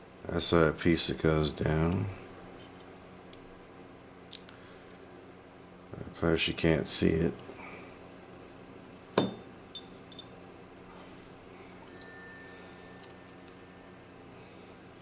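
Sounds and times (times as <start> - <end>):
small metal parts clinking: 9.2 - 10.3.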